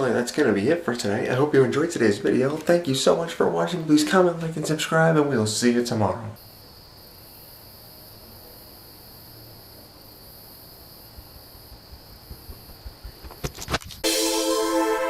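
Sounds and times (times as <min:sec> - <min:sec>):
cricket chirping: 0:06.4 - 0:14.0
loud electronic music: 0:14.0 - 0:15.0.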